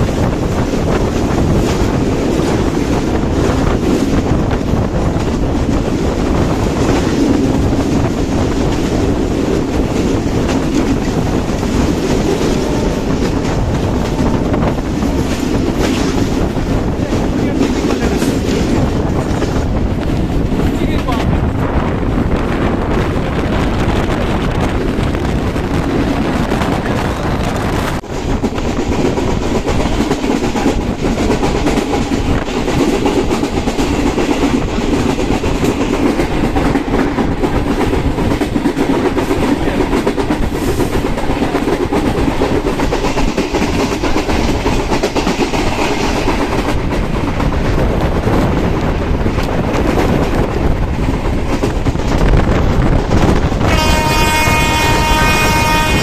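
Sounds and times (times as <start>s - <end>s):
train rumbling on rails: 0.0s - 56.0s
wheels clacking over rail joints: 23.8s - 56.0s.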